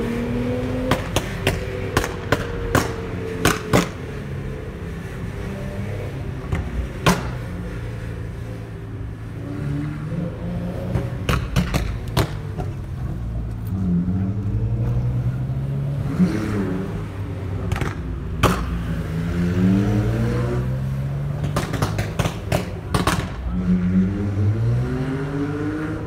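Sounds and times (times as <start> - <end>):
exhaust pops and bangs: 10.9 - 12.8, 21.4 - 23.4
car engine revving: 13.5 - 26.0.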